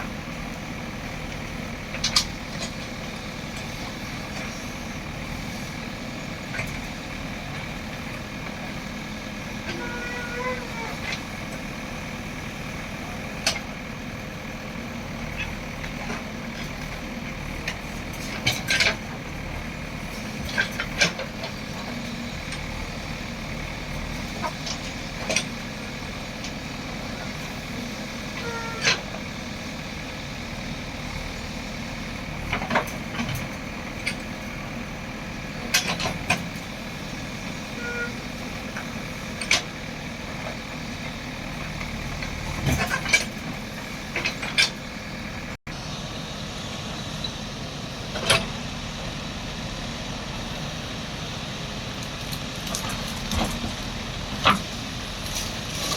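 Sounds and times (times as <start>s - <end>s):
diesel engine running: 0.0s - 55.9s.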